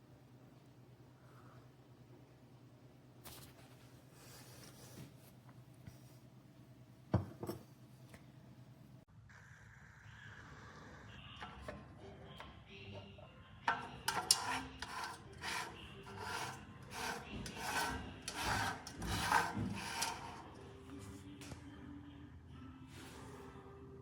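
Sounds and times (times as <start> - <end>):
rapid rubbing strokes: 14.1 - 20.6.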